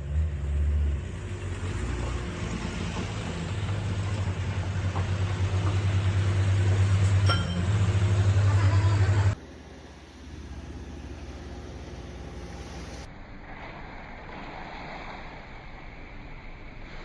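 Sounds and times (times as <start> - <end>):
truck engine rumbling: 0.0 - 13.2.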